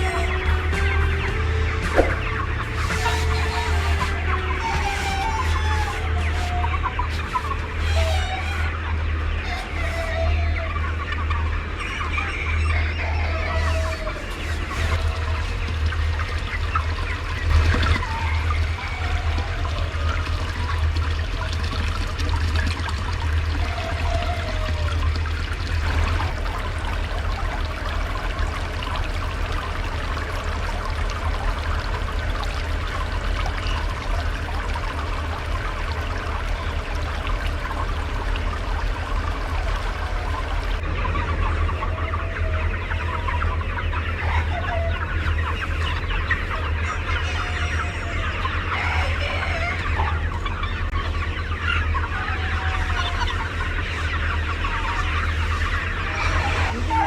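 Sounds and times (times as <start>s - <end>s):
low hum: 0.0s - 9.9s
hen calls: 0.0s - 21.5s, 42.2s - 57.0s
chickens clucking: 0.0s - 57.0s.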